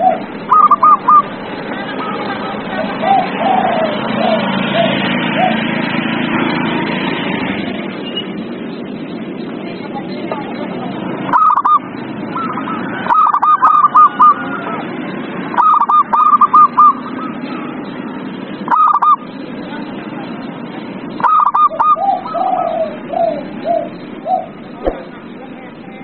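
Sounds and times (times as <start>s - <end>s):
dove cooing: 0.0s - 1.3s, 2.0s - 6.5s, 10.7s - 14.9s, 15.5s - 17.8s, 18.6s - 19.3s, 21.1s - 25.4s
steady background noise: 0.0s - 26.0s.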